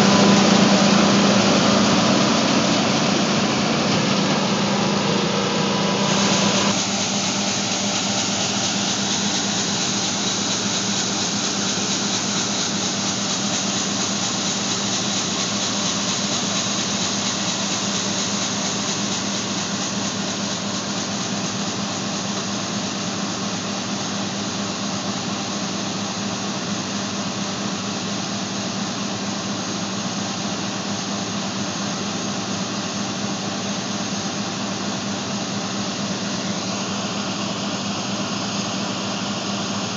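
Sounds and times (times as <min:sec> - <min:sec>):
steady low hum: 0:00.0 - 0:23.2
combine harvester running: 0:00.0 - 0:39.9.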